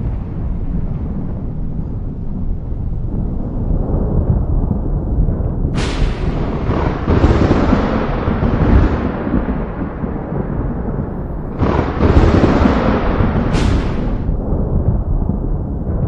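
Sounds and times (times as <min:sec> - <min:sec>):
deep rumble: 0:00.0 - 0:16.0
sudden booming blasts: 0:00.0 - 0:16.0.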